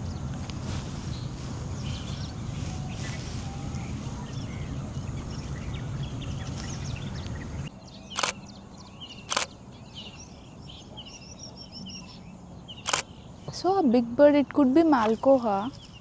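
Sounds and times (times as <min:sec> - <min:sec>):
small birds chirping: 0:00.0 - 0:16.0
sharp clicks: 0:08.2 - 0:08.4, 0:09.3 - 0:09.5, 0:12.8 - 0:13.1.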